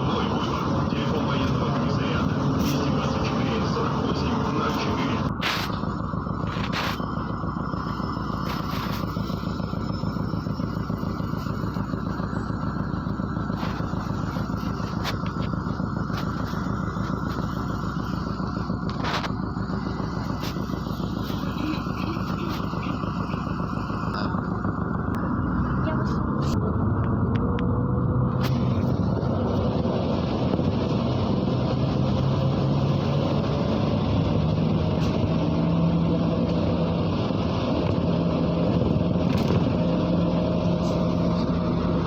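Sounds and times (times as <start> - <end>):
bus engine and road noise: 0.0 - 42.0.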